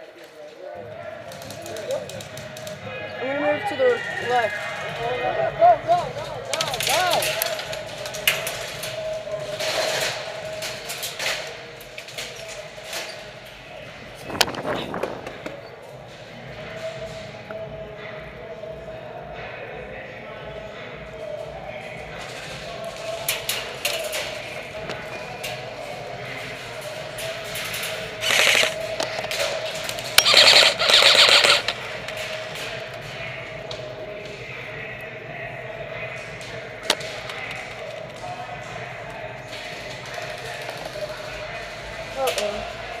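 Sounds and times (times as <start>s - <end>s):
airsoft rifle automatic bursts: 30.2s - 31.8s.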